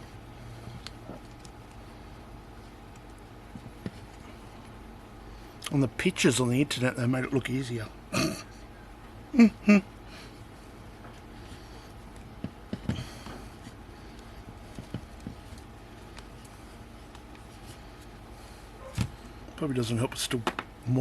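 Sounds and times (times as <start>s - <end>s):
faint clicks and taps of small parts: 0.6s - 1.8s, 14.1s - 17.5s.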